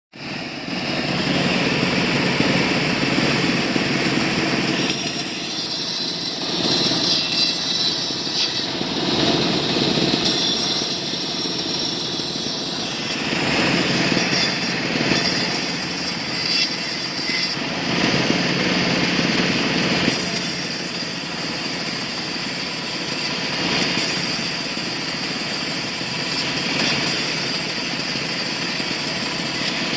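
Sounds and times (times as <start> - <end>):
sawmill saw cutting wood: 0.2 - 29.9.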